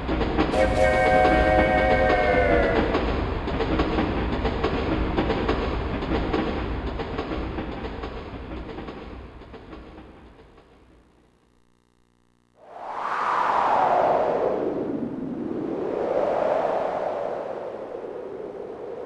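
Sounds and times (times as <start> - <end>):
train rumble: 0.0 - 9.5
synthesized train whistle: 0.5 - 3.4.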